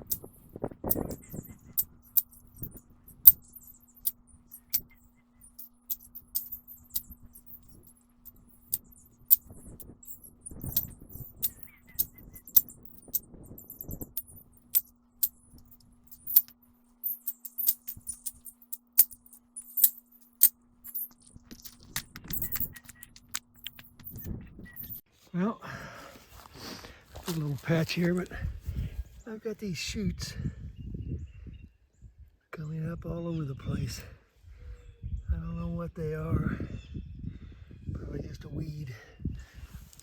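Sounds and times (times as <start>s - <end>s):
sharp metallic clicks and clinks: 0.0s - 25.0s.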